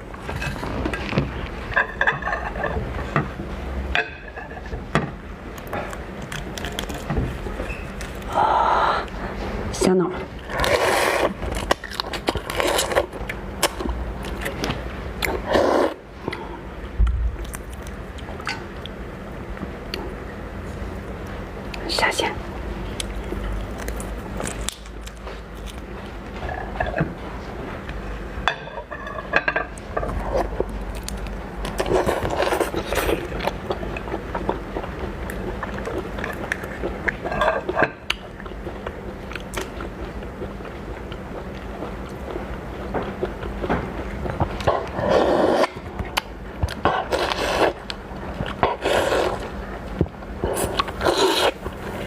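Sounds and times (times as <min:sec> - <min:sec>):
lobster shell crackling being eaten: 0:05.6 - 0:07.1.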